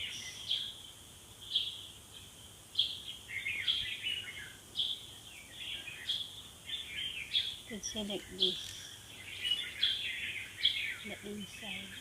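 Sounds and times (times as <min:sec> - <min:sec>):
birds chirping: 0:00.0 - 0:12.0.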